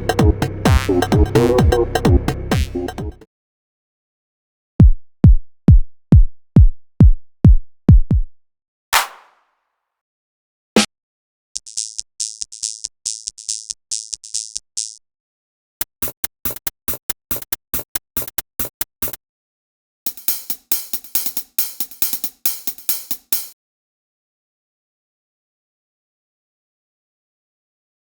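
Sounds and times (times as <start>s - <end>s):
drum machine hit: 0.0s - 3.2s, 9.0s - 9.4s, 20.1s - 23.5s
hissy open hi-hat loop: 0.0s - 3.2s, 20.1s - 23.6s
ticking closed hi-hat: 20.1s - 23.6s.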